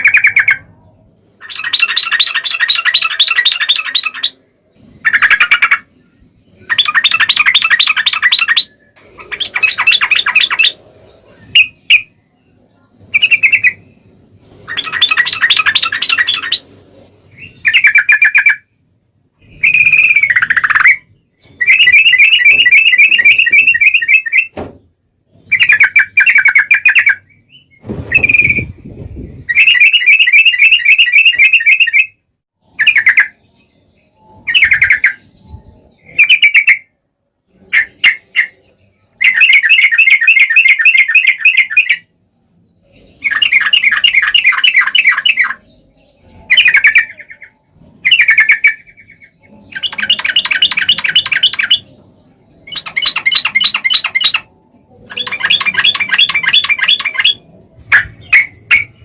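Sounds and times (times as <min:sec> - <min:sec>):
bulbul chattering calls: 0:00.0 - 0:00.7, 0:01.4 - 0:12.2, 0:13.0 - 0:14.0, 0:14.6 - 0:16.7, 0:17.3 - 0:18.8, 0:42.8 - 0:59.0.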